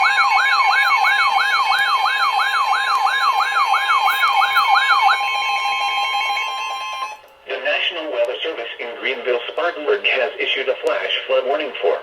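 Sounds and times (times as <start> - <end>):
electronic siren wailing: 0.0 - 7.2
steady high alert tone: 0.0 - 7.2.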